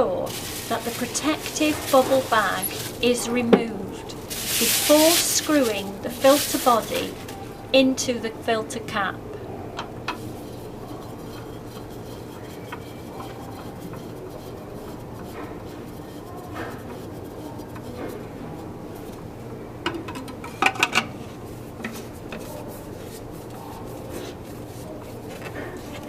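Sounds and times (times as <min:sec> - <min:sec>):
steady low hum: 0:00.0 - 0:16.2.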